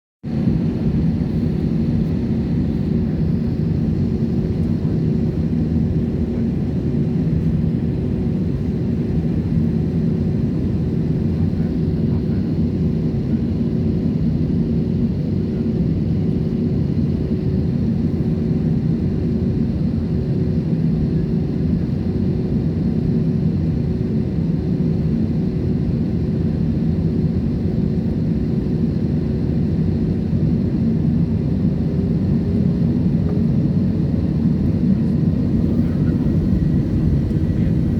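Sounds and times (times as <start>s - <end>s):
jet engine and airflow rumble: 0.2s - 37.9s
steady low hum: 27.5s - 37.9s.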